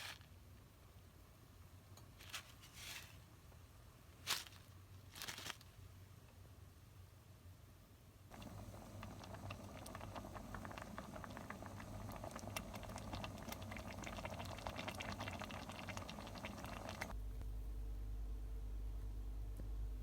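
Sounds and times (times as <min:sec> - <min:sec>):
food sizzling in a pan: 0:08.3 - 0:17.1
oil spitting and popping: 0:08.3 - 0:17.2.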